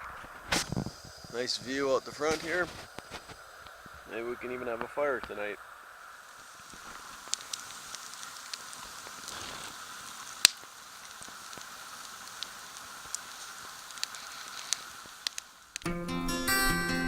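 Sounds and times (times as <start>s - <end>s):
steady hiss: 0.0s - 15.9s
light ticks: 6.6s - 9.4s, 10.4s - 15.9s.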